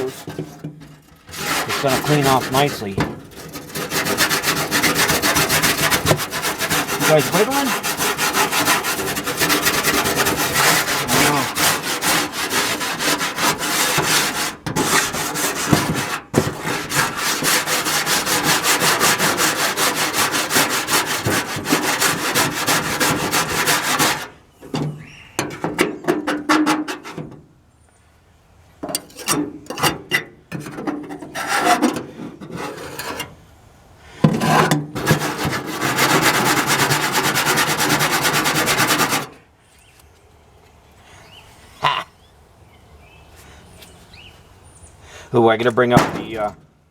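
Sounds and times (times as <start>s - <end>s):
wire brush scrubbing metal pan: 0.0s - 24.4s, 34.3s - 39.4s, 45.9s - 46.6s.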